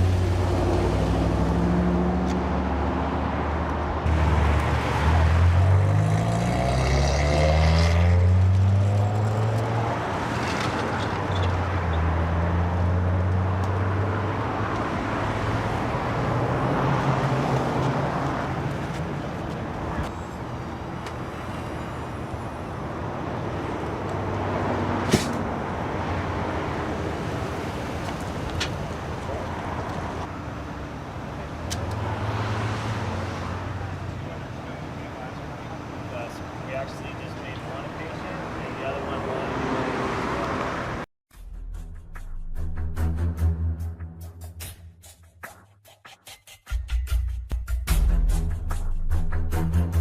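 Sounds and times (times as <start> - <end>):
vehicle engine accelerating: 0.0 - 18.7
road noise: 0.0 - 46.6.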